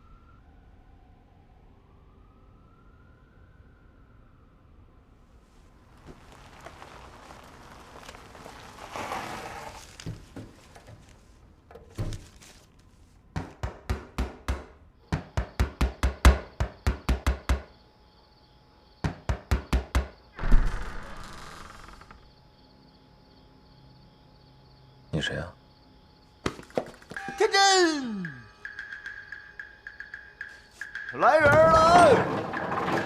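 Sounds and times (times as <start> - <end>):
faint rustling: 5.4 - 13.3
rapid sharp knocks: 13.4 - 17.7.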